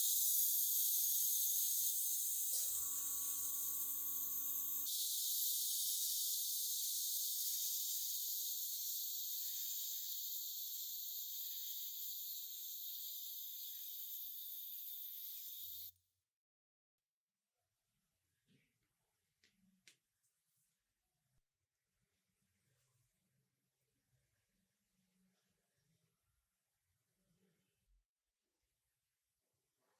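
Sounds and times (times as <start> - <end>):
spraying hiss: 0.0 - 15.9.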